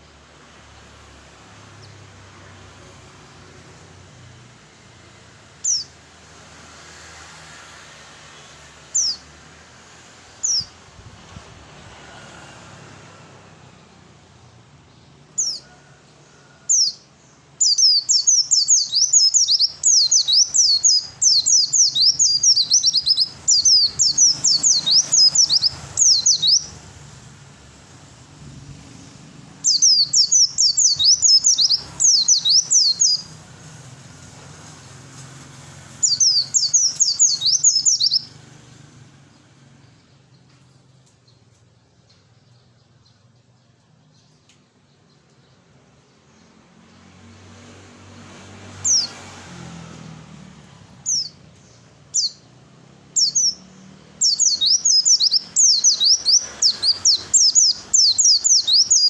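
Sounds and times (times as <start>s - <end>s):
bird singing falling notes: 29.6s - 33.3s, 54.2s - 59.0s.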